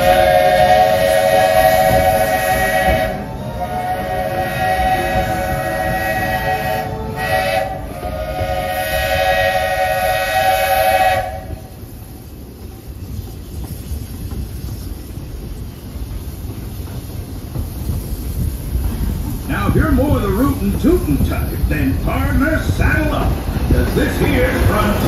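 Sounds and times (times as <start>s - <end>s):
steam locomotive whistle: 0.0s - 11.9s
train running rumble: 0.0s - 25.0s.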